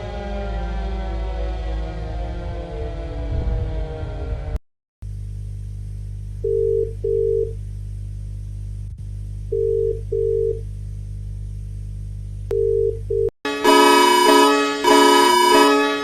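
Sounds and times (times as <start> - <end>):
steady low hum: 5.0 - 15.8
short alarm beeps: 13.5 - 16.0.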